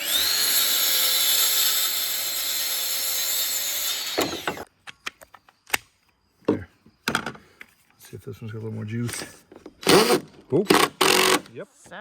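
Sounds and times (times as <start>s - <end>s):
power saw cutting wood: 0.0s - 4.7s, 9.8s - 11.5s.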